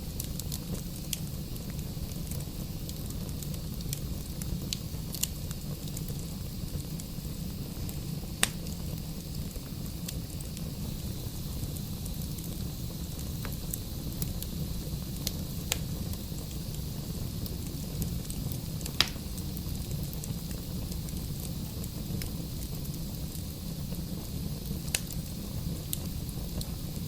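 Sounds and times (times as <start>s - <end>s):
fire flames rumbling: 0.0s - 27.0s
logs crackling and popping: 0.1s - 7.1s, 7.7s - 10.7s, 11.7s - 23.5s, 24.6s - 26.7s.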